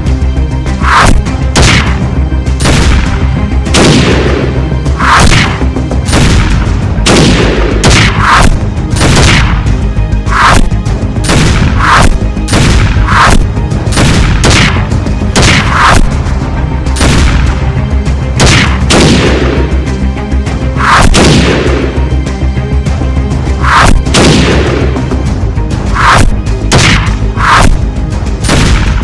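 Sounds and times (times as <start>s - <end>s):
dramatic action music: 0.0s - 29.0s
heavy booming hits: 0.8s - 16.2s.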